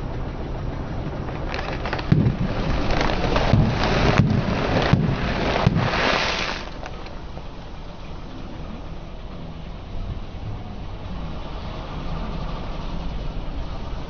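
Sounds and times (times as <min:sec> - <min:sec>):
low rumble: 0:00.0 - 0:14.0
car tyre crushing brittle objects: 0:01.3 - 0:07.2.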